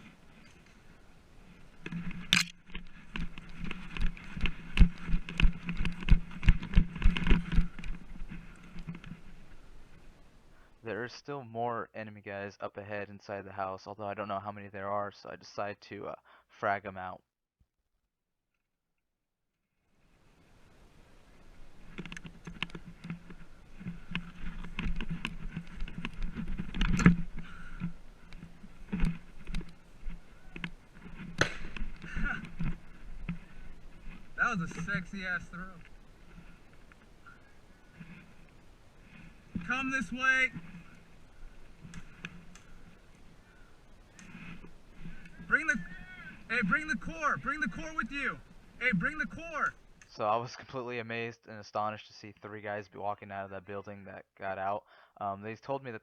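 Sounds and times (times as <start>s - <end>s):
footsteps: 0.0s - 10.7s, 21.7s - 43.2s
clicks and rustles of gear: 1.8s - 9.4s, 21.8s - 33.5s.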